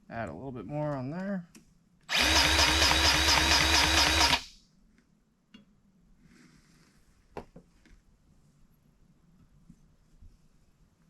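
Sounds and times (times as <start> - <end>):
power drill spinning: 2.1 - 4.5.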